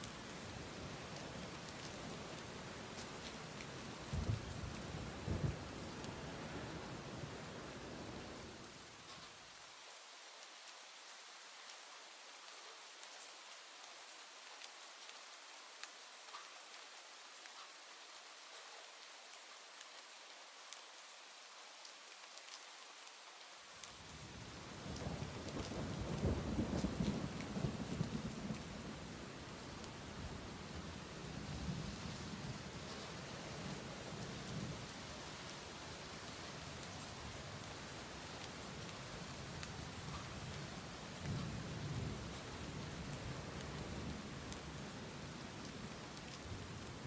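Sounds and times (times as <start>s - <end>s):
steady rain falling: 0.0s - 47.0s
low rumble of thunder: 4.0s - 8.3s, 24.2s - 34.9s, 39.4s - 44.8s.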